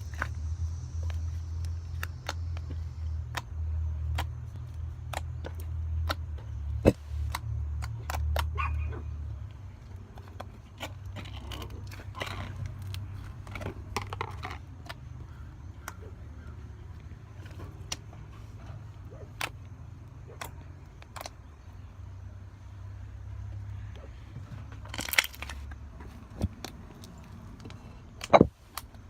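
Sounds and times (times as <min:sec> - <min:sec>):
crackly slime squelches: 0:00.0 - 0:29.0
slime squishing with clicks and pops: 0:00.8 - 0:08.7.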